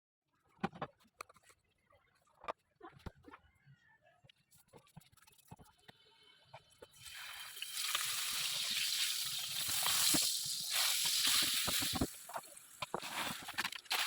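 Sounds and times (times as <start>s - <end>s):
food sizzling in a pan: 6.9s - 14.0s.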